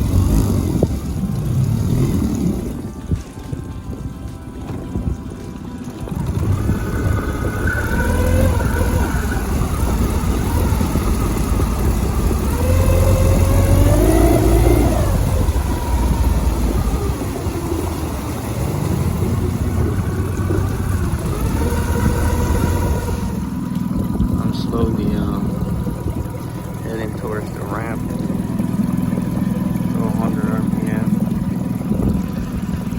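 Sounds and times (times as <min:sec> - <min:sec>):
outboard motor running: 0:00.0 - 0:32.9.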